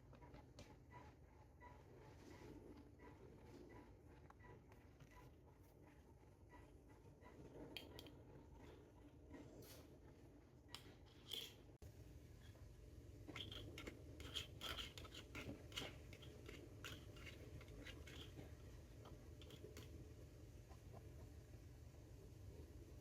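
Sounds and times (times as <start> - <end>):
toy pieces clicking and scratching: 13.4 - 18.5.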